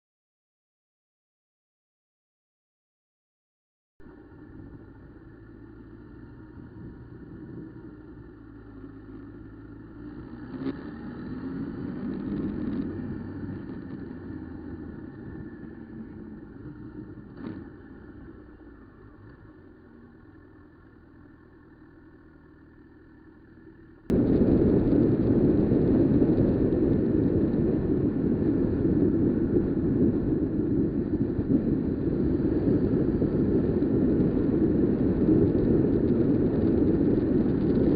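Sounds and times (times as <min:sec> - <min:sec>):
motorcycle engine running: 0:04.1 - 0:37.9
wind rush over microphone: 0:24.1 - 0:37.9.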